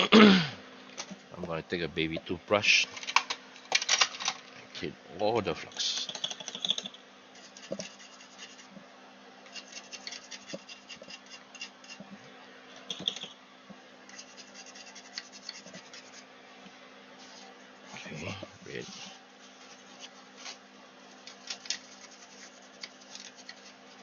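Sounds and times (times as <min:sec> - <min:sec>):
toothbrush scrubbing circuit board: 0:09.5 - 0:12.0, 0:14.1 - 0:16.2, 0:21.2 - 0:24.0.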